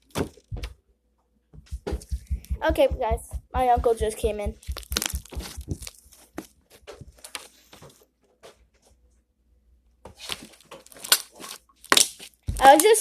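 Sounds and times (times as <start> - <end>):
slime clicks and crackles: 4.7 - 6.0.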